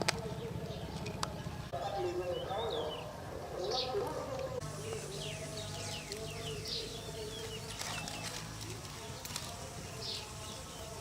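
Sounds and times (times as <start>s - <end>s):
small birds chirping: 0.0s - 11.0s
low steady hum: 4.2s - 11.0s.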